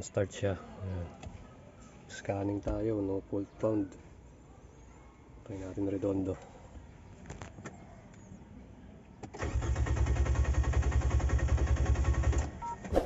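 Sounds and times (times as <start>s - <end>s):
starter motor cranking engine: 9.4s - 12.6s.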